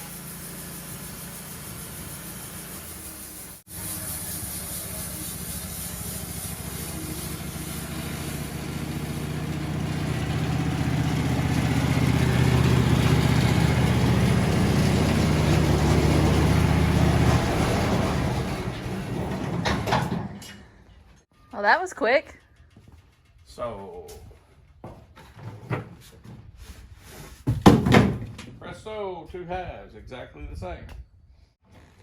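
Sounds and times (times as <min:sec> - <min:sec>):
sawmill cutting plastic pipe: 0:00.0 - 0:20.2.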